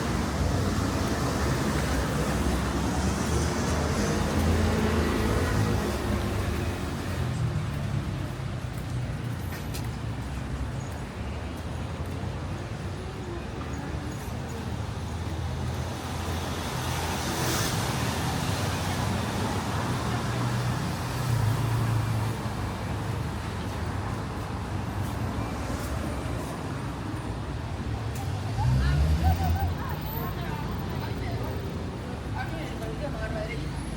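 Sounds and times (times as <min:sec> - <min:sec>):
vehicle engines running: 0:00.0 - 0:33.9.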